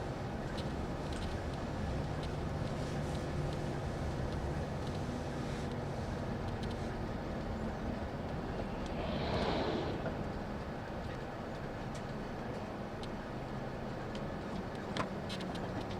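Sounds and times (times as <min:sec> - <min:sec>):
bus engine rumble: 0:00.0 - 0:15.9
road noise: 0:00.0 - 0:15.9
rushing swell: 0:08.4 - 0:10.6.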